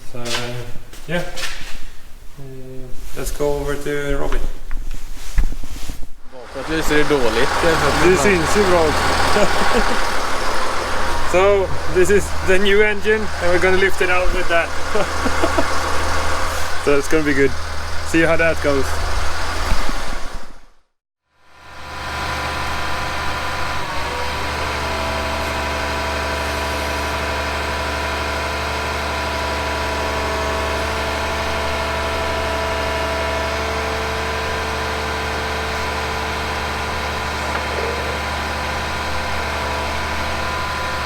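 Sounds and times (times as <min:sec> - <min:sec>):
excavator engine idling: 0:06.3 - 0:20.6, 0:21.7 - 0:41.0
whining tones: 0:06.3 - 0:20.7, 0:21.6 - 0:41.0.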